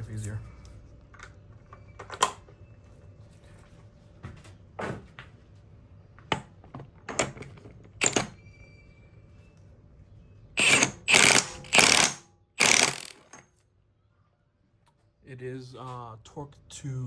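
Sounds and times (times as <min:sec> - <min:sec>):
metallic knocks and clinks of tools: 0:07.1 - 0:08.4, 0:11.1 - 0:13.6.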